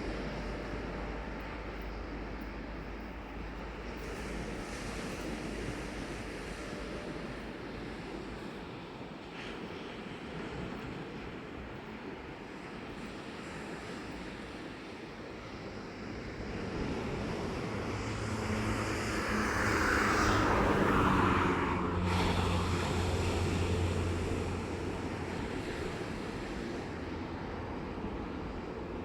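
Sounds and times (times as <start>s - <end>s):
vehicle passing by: 16.7s - 27.3s.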